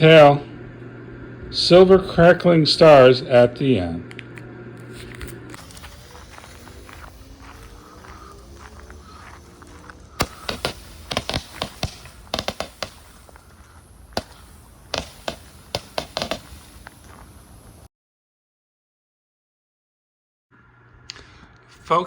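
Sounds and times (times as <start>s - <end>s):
fireworks popping: 5.0s - 17.9s.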